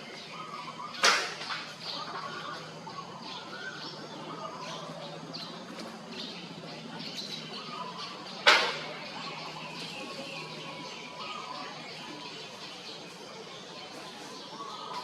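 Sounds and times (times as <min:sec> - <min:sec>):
birds chirping: 0:00.0 - 0:15.0
steady background hum: 0:00.0 - 0:15.0
loud sharp crack: 0:01.0 - 0:01.7, 0:08.4 - 0:09.0.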